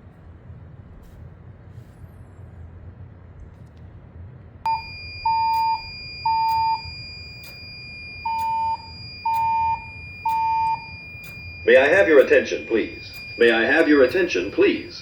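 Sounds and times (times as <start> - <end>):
fire alarm evacuation beeps: 4.7 - 15.0
steady high-pitched tone: 4.7 - 15.0.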